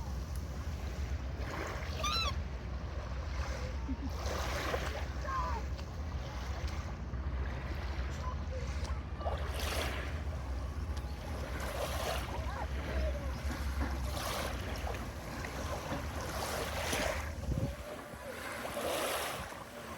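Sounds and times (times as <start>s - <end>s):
river water lapping: 0.0s - 19.9s
wind buffeting microphone: 9.8s - 19.8s.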